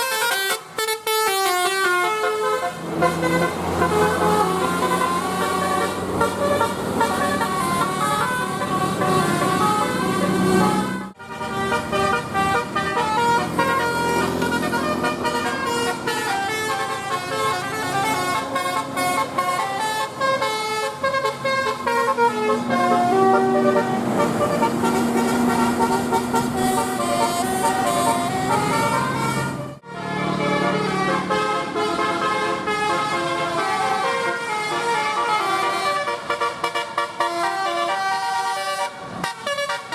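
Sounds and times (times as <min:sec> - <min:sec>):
bus air horns playing tunes: 0:00.0 - 0:39.9.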